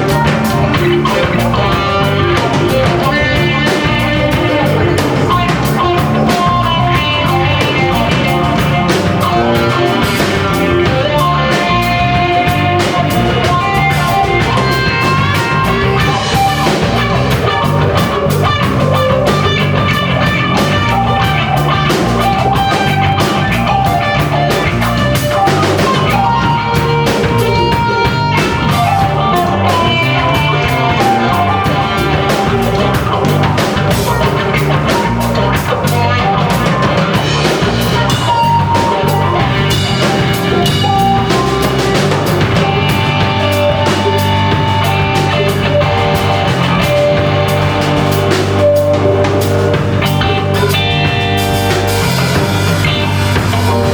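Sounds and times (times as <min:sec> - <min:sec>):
bass guitar: 0:00.0 - 0:53.9
drum kit beat: 0:00.0 - 0:53.9
electric guitars: 0:00.0 - 0:53.9.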